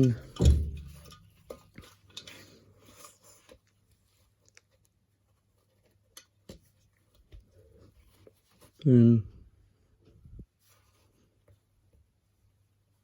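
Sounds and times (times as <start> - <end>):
light clicks of helmet handling: 1.0 - 8.7.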